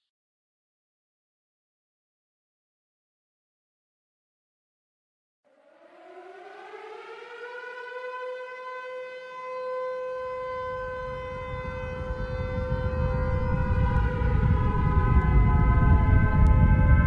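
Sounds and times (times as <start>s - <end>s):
civil defense siren wailing: 5.5s - 17.0s
low rumble: 10.5s - 17.0s.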